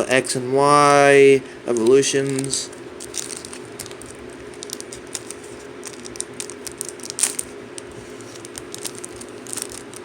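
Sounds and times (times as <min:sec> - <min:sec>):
foil wrapper crinkling: 0:01.8 - 0:10.0.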